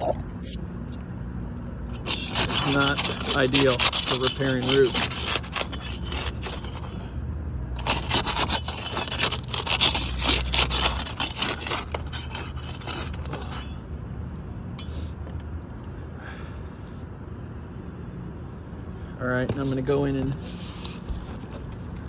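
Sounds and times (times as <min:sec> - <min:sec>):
trowel scraping shingles: 0:01.9 - 0:07.0, 0:07.8 - 0:13.8, 0:14.8 - 0:15.3, 0:19.5 - 0:22.0.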